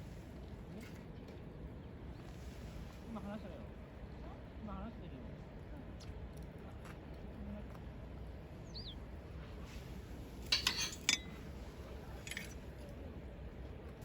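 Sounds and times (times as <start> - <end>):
bird chirp: 8.6 - 9.0
cookware clinking: 10.5 - 11.4, 12.2 - 12.6.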